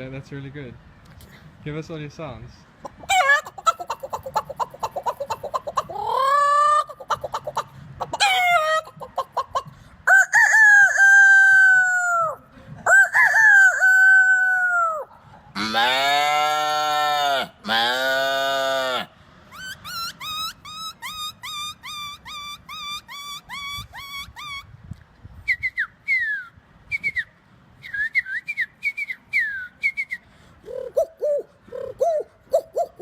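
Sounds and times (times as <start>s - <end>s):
man imitating animal calls: 2.9s - 9.6s, 10.7s - 24.6s, 30.6s - 33.0s
bird-like whistled chirps: 19.6s - 24.7s, 25.5s - 30.2s.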